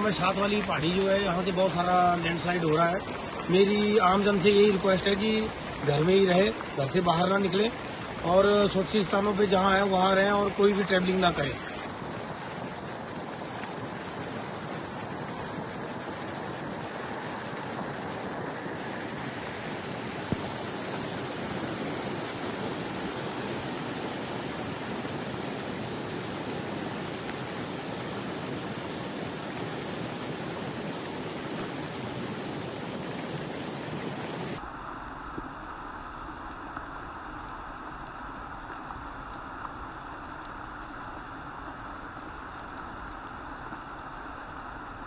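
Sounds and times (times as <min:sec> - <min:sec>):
river water rushing: 0:00.0 - 0:34.6.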